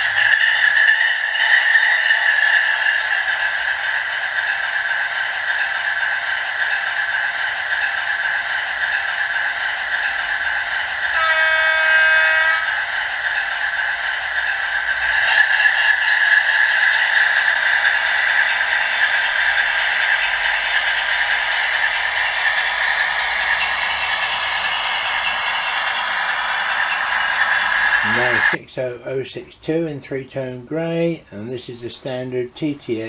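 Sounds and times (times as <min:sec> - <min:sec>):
model locomotive engine sound: 0:00.0 - 0:33.0
locomotive horn blast: 0:11.2 - 0:12.7.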